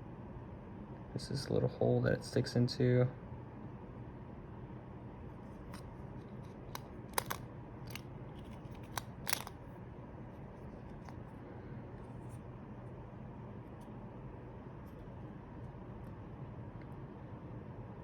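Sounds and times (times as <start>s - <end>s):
low steady hum: 0.0s - 18.0s
small plastic parts clicking: 5.7s - 9.6s.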